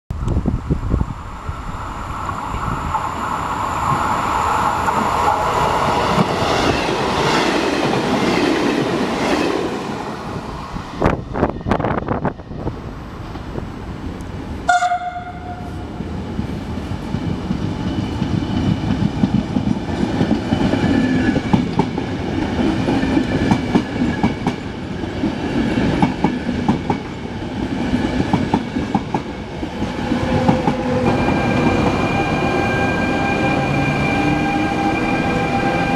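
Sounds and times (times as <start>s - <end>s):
train rumbling along track: 0.1s - 35.9s
train horn blast: 14.7s - 15.9s.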